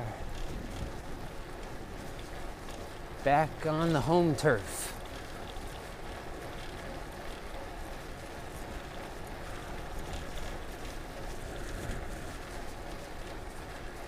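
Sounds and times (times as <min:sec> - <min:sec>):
wind rumble on microphone: 0:00.0 - 0:03.2, 0:08.2 - 0:14.0
bicycle rolling noise: 0:00.0 - 0:14.0.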